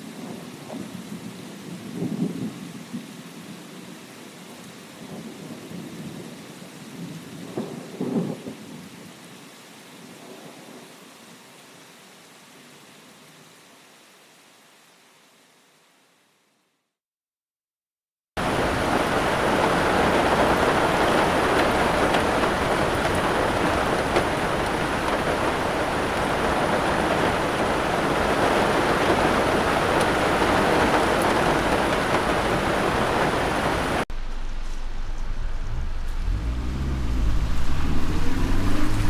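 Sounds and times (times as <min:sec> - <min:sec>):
heavy rain hissing: 0:18.4 - 0:39.0
low rumble: 0:34.1 - 0:39.0.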